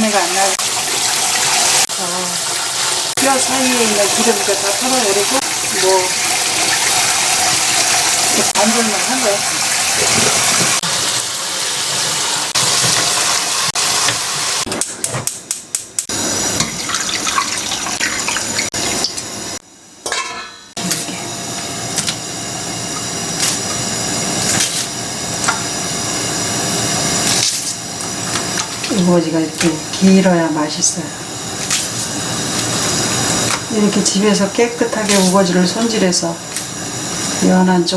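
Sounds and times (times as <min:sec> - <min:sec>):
tap water running: 0:00.0 - 0:14.7, 0:16.1 - 0:19.6, 0:21.5 - 0:37.9.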